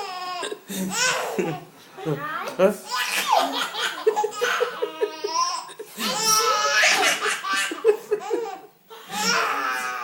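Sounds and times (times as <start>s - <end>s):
child and adults laughing: 0.4s - 1.7s, 3.1s - 9.4s.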